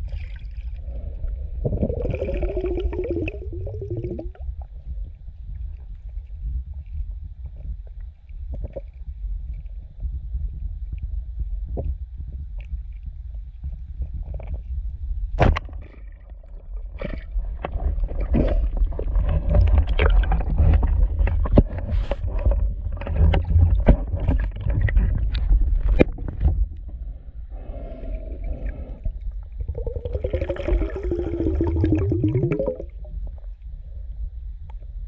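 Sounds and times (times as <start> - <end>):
underwater rumble of moving water: 0.0 - 35.0
humming tone dipping and rising: 29.2 - 33.8.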